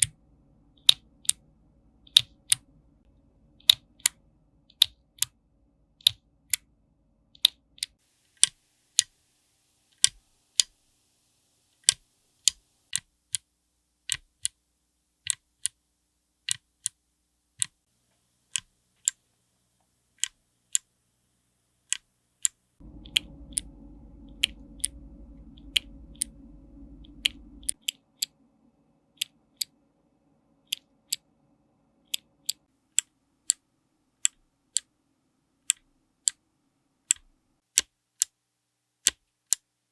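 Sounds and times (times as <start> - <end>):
low steady hum: 22.8 - 32.7.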